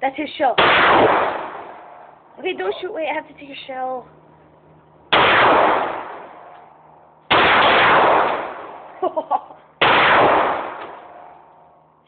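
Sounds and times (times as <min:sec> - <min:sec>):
pistol shots echoing: 0:00.6 - 0:02.2, 0:05.1 - 0:09.0, 0:09.8 - 0:11.5.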